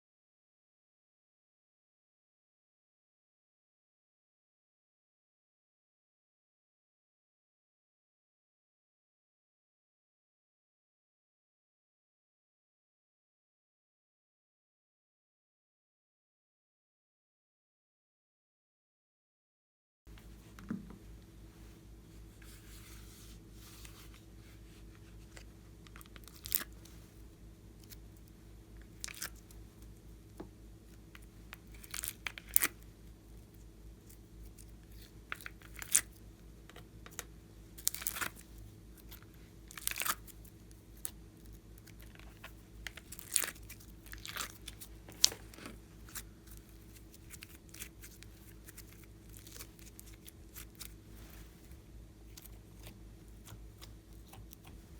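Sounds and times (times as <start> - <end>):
slime crackling and popping: 26.0 - 26.7, 37.8 - 38.4, 39.1 - 40.3, 42.9 - 45.4.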